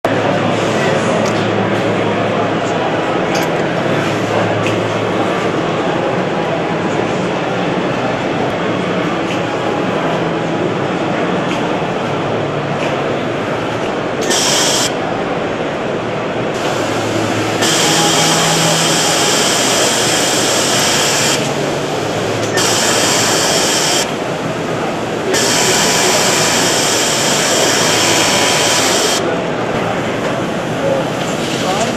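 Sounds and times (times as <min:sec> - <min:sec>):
sewing machine running: 0:14.2 - 0:14.9, 0:16.6 - 0:24.2, 0:25.3 - 0:29.2.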